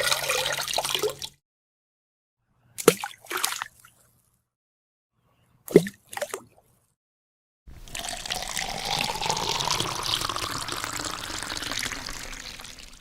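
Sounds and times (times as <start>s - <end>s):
water pouring into container: 7.7s - 13.0s.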